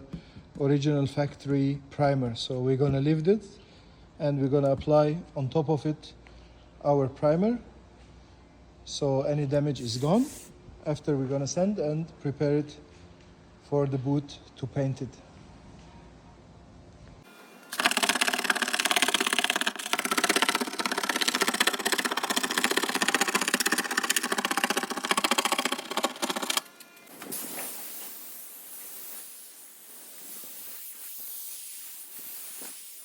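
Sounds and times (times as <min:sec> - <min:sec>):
steady hiss: 0:09.8 - 0:10.5, 0:26.7 - 0:33.0
power tool buzzing rattle: 0:17.3 - 0:33.0.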